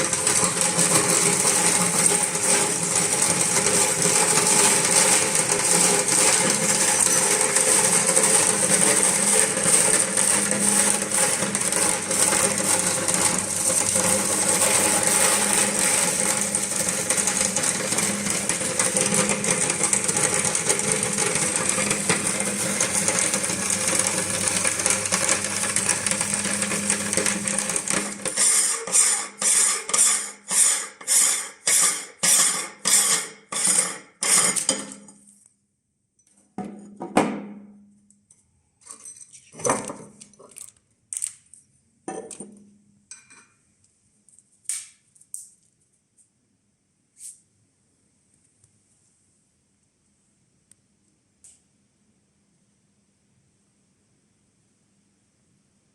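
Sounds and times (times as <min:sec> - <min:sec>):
meat grinder motor hum: 0:00.0 - 0:34.8
plastic balls crunching in grinder: 0:00.0 - 0:34.9, 0:40.1 - 0:41.5.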